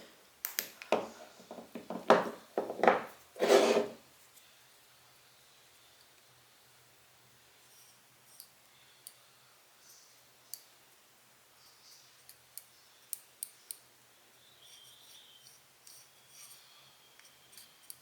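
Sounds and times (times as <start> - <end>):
soft rubbing of lens wiping: 14.6 - 17.8.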